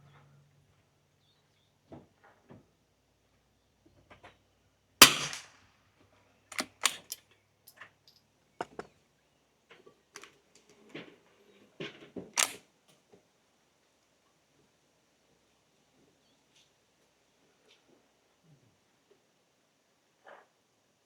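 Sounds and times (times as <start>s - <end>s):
rifle shot: 5.0s - 5.6s
sharp clicks and clacks: 8.6s - 8.9s.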